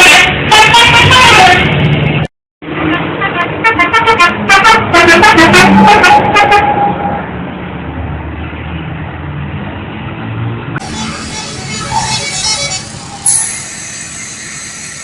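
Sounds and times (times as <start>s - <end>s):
multi-tone musical bus horn: 0.0s - 1.9s, 2.8s - 7.2s, 10.8s - 15.0s.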